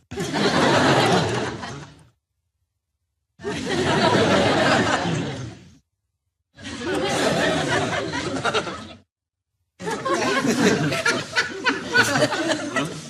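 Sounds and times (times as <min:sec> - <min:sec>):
studio audience laughter: 0:00.0 - 0:02.1, 0:03.4 - 0:05.8, 0:06.6 - 0:09.1, 0:09.8 - 0:13.0.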